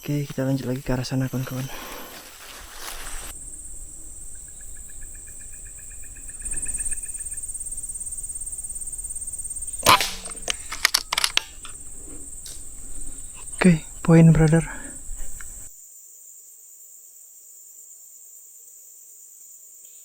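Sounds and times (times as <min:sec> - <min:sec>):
high insect drone: 0:00.0 - 0:19.6
faint rapid pulsing trill: 0:03.3 - 0:15.7
air rifle shot: 0:08.9 - 0:12.8
small clicks and knocks: 0:09.8 - 0:12.7.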